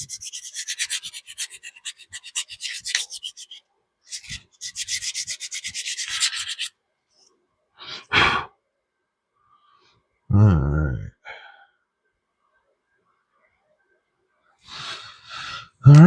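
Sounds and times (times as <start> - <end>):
sandpaper rubbing plastic pipe: 0.0 - 6.7
loud breath: 7.8 - 8.5, 14.7 - 15.8.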